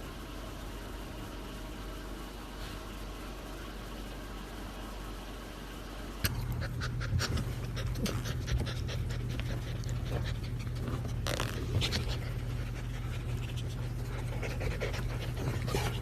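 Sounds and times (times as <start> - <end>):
steady low hum: 0.0 - 16.0
dog panting: 6.5 - 16.0.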